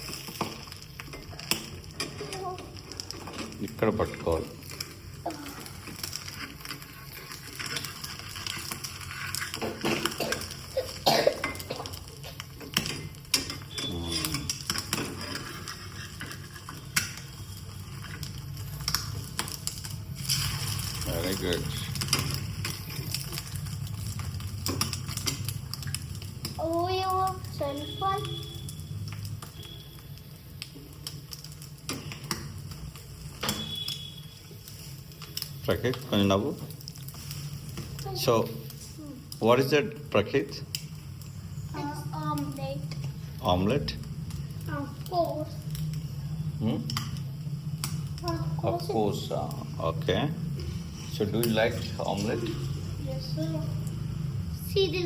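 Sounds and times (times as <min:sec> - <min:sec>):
omelet sizzling: 0:00.0 - 0:55.0
utensil scraping a frying pan: 0:04.1 - 0:25.9.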